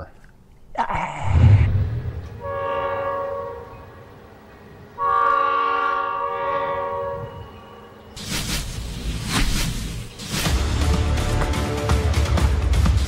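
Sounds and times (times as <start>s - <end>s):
train horn blasts: 2.2s - 4.2s, 5.0s - 8.1s
music: 10.2s - 13.0s.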